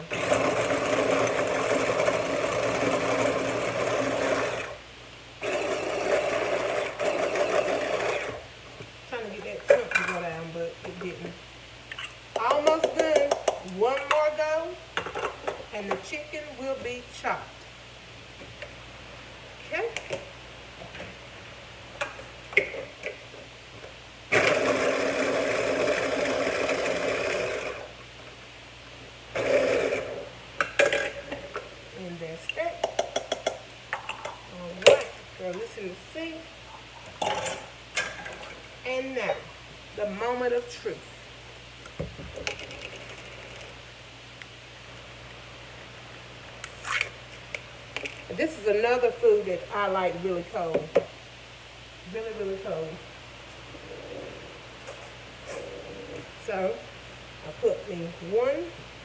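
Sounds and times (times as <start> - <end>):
electric food chopper running: 0.0 - 4.8, 5.4 - 8.4, 24.3 - 28.0, 29.4 - 30.2.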